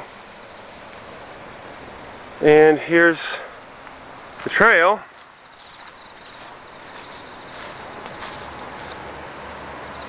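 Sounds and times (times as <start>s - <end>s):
crickets chirring: 0.0s - 10.0s
rapid insect trills: 0.0s - 10.0s.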